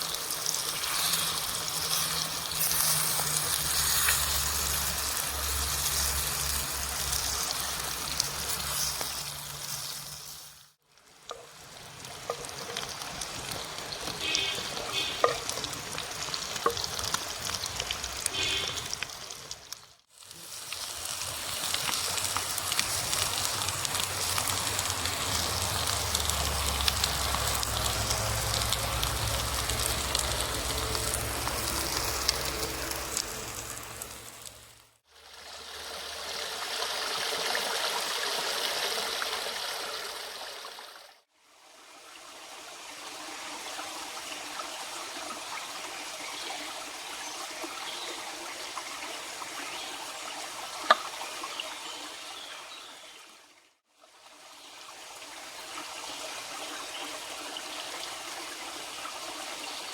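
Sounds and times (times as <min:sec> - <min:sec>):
eggs sizzling in a pan: 0:00.0 - 0:37.3
wood fire crackling: 0:11.0 - 0:35.0.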